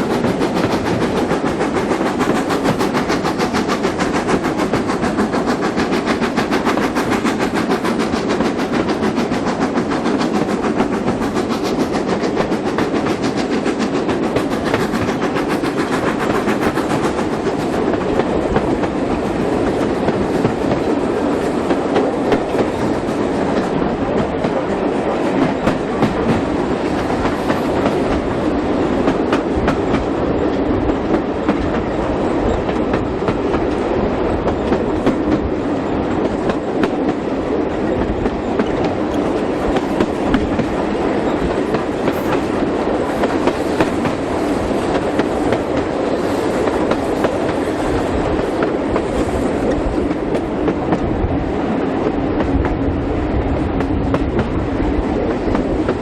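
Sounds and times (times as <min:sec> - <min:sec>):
train carriage rumbling on track: 0:00.0 - 0:56.0
wheels clicking over rail joints: 0:29.0 - 0:51.2.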